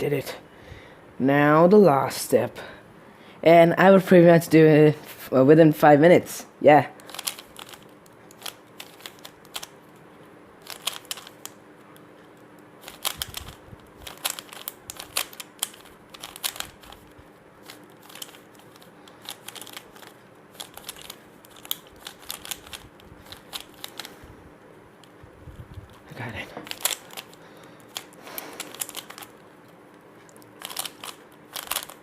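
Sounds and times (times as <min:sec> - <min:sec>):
puzzle cube layers clicking: 0:07.0 - 0:09.7, 0:10.6 - 0:11.6, 0:12.8 - 0:17.0, 0:17.6 - 0:24.1, 0:26.6 - 0:29.4, 0:30.3 - 0:32.0.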